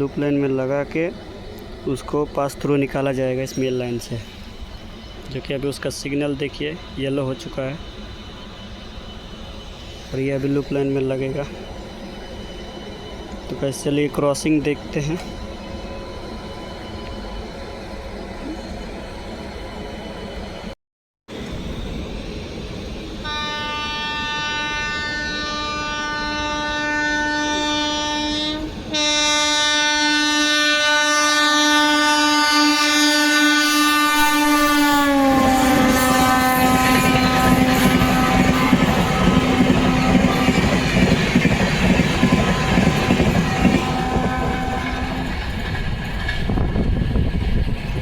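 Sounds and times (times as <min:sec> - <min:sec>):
train coaches rushing and clattering: 0:00.0 - 0:17.8, 0:34.0 - 0:48.0
locomotive horn blast: 0:23.2 - 0:40.9, 0:42.2 - 0:45.3.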